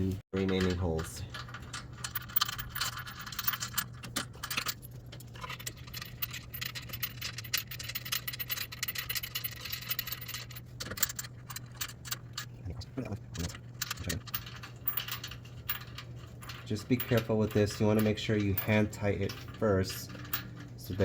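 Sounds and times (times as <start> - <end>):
metal bolts clinking and rattling: 0.0 - 21.0
steady low hum: 0.0 - 21.0.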